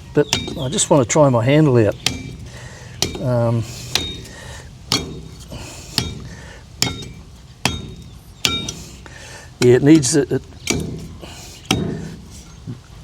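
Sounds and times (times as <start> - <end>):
metallic ring of blade: 1.9 - 9.1.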